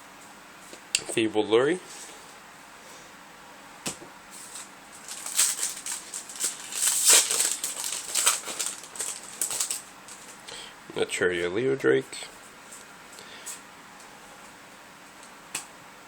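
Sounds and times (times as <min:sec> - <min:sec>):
cards and foil wrapper rustling: 0:04.3 - 0:10.6.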